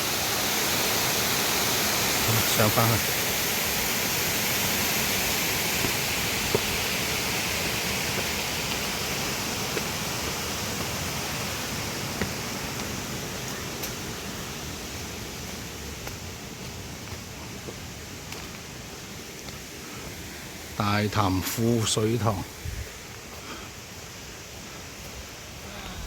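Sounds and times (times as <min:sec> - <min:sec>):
falling water rushing: 0:00.0 - 0:26.0.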